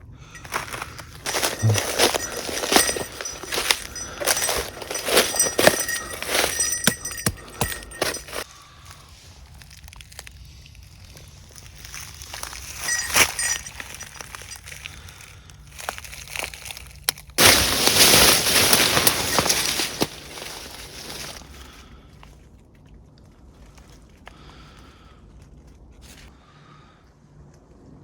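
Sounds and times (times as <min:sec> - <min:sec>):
steady rustling noise: 0:00.4 - 0:08.4, 0:17.4 - 0:21.4
small clinks: 0:00.4 - 0:08.5, 0:12.4 - 0:15.2, 0:17.4 - 0:21.4
footsteps through dry leaves: 0:00.4 - 0:21.9.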